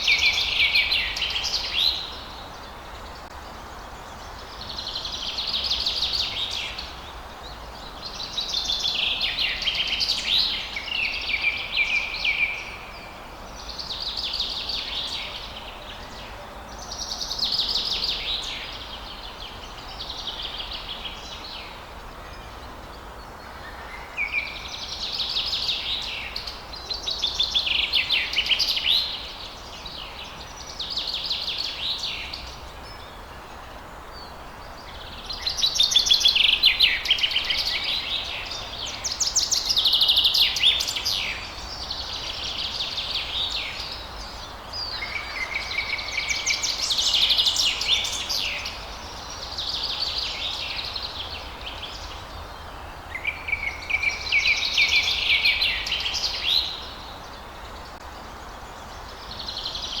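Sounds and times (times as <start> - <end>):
faint background hiss: 0.0 - 60.0.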